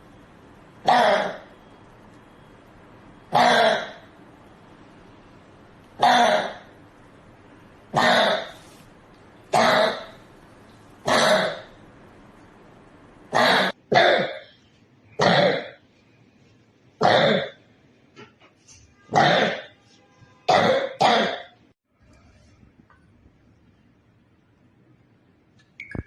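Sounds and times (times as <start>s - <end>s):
boy coughing: 20.5s - 21.5s.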